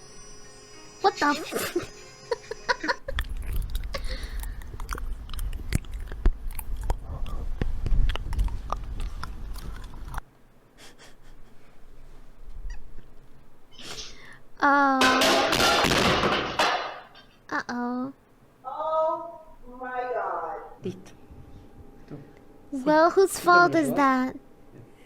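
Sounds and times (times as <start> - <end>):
cat chewing and crunching: 3.0 - 10.2.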